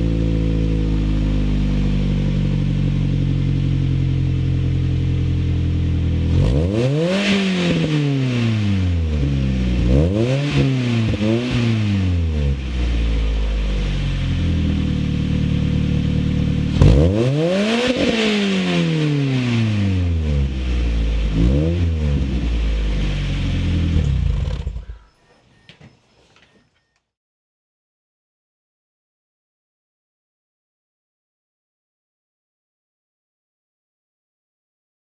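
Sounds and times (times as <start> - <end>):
car engine idling and revving: 0.0 - 25.1.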